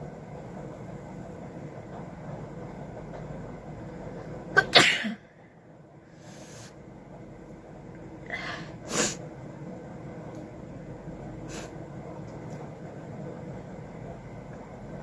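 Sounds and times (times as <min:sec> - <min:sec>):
woman sneezing: 0:04.6 - 0:05.2.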